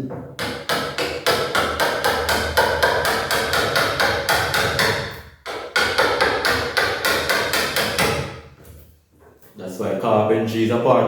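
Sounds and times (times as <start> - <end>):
hammer striking chisel in wood: 0.4 - 8.4.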